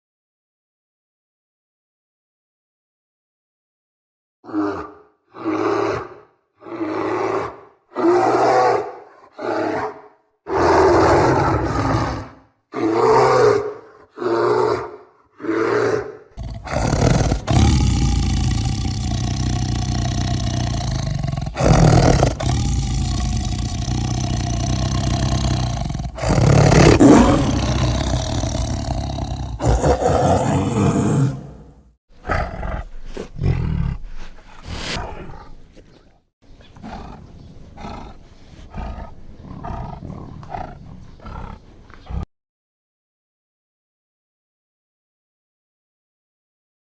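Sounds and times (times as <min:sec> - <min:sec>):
big cat roaring: 0:04.5 - 0:35.6, 0:36.8 - 0:42.3.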